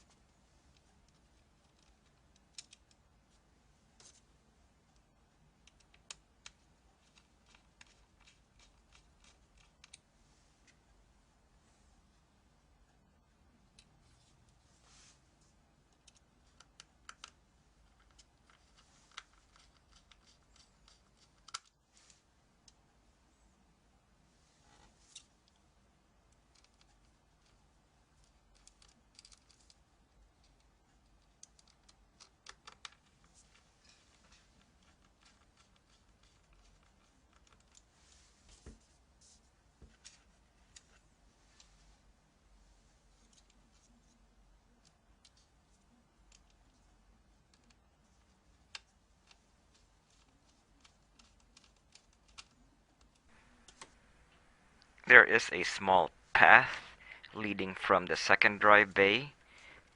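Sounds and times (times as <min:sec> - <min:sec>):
laptop parts clicking and tapping: 0:00.7 - 0:03.0, 0:15.9 - 0:21.8, 0:28.2 - 0:29.8, 0:30.4 - 0:37.9.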